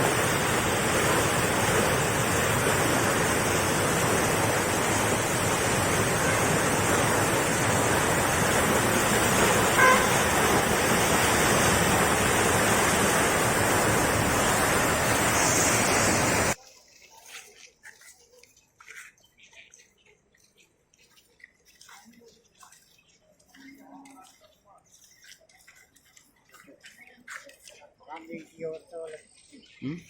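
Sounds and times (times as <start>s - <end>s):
heavy rushing water: 0.0s - 16.6s.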